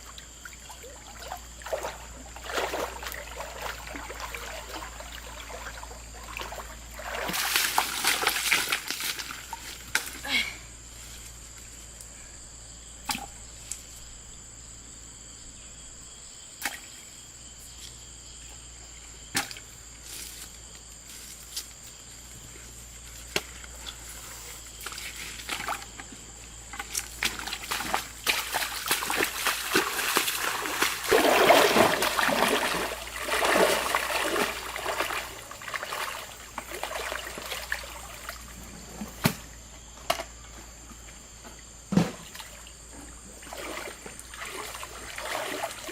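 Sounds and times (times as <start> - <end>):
water splashing and sloshing: 0.0 - 10.4, 22.7 - 45.9
water dripping: 27.2 - 38.4.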